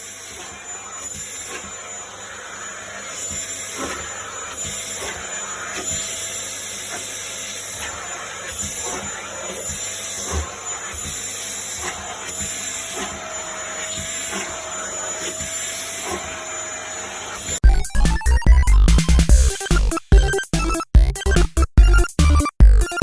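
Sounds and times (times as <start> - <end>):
small motor whirring: 0.0 - 17.6.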